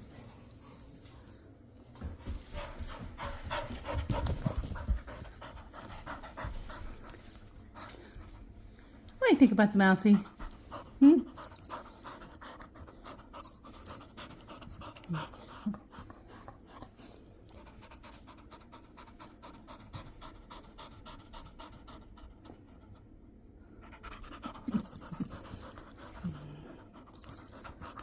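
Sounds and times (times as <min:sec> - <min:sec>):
high electronic chirps: 0:00.0 - 0:01.6, 0:11.4 - 0:11.9, 0:13.4 - 0:14.1, 0:24.2 - 0:26.3, 0:27.1 - 0:28.0
puppy panting: 0:00.0 - 0:08.5, 0:10.0 - 0:28.0.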